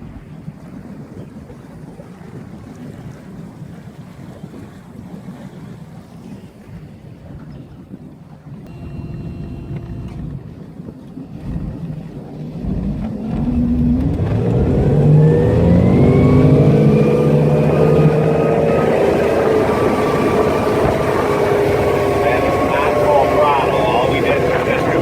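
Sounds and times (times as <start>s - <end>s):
boat engine revving up: 8.7s - 25.0s.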